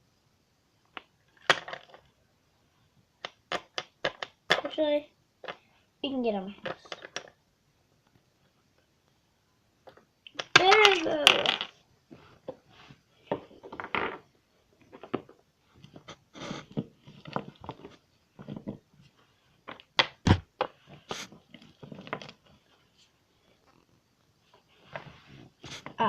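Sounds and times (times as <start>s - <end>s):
plastic toys clicking and knocking: 0.9s - 2.2s, 3.2s - 4.8s, 5.4s - 5.7s, 6.6s - 7.4s, 9.8s - 11.8s.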